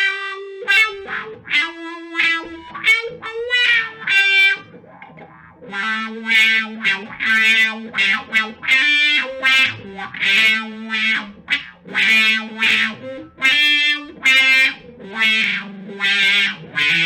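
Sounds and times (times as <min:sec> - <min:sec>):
electric guitar with vibrato: 0:00.0 - 0:17.0.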